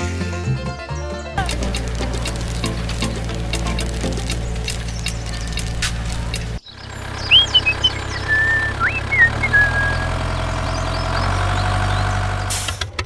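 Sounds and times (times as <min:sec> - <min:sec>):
engine idling: 0:01.4 - 0:13.0
high chirps: 0:01.6 - 0:11.2.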